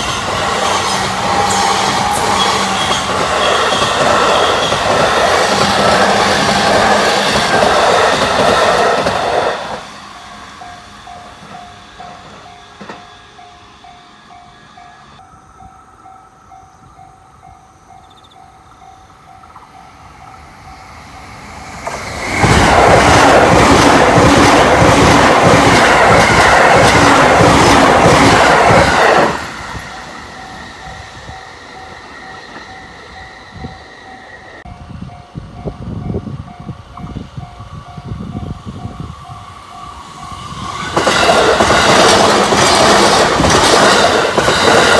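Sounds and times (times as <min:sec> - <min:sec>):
train rushing past: 0:00.0 - 0:16.0, 0:18.3 - 0:44.9
crossing warning bell ringing: 0:09.9 - 0:21.6, 0:23.6 - 0:44.9
wheels clattering over rail joints: 0:40.7 - 0:44.9.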